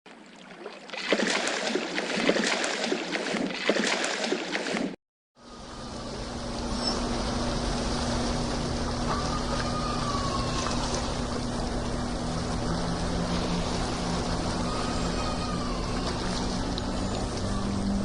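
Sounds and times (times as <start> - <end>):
water splashing and gurgling: 0.1 - 5.0, 6.0 - 18.0
rumbling rush with low hum: 5.4 - 18.0.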